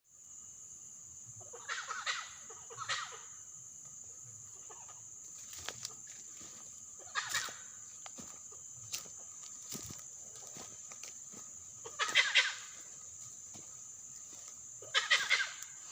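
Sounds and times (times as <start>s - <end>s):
rattling clucking animal calls: 1.4s - 3.4s, 7.0s - 7.7s, 11.7s - 13.0s, 14.8s - 15.9s.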